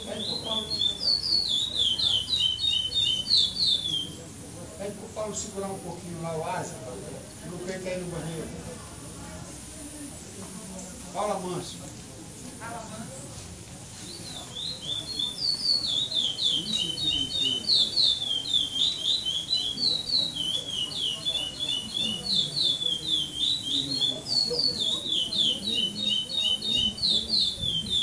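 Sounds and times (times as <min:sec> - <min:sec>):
finch singing whistled notes: 0:00.0 - 0:04.3, 0:14.0 - 0:28.0.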